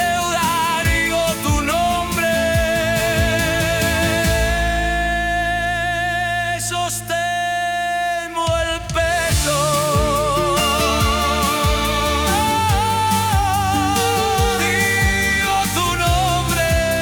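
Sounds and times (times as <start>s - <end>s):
backing band: 0.0s - 4.9s, 8.4s - 17.0s
drum hits: 0.0s - 5.3s, 8.4s - 17.0s.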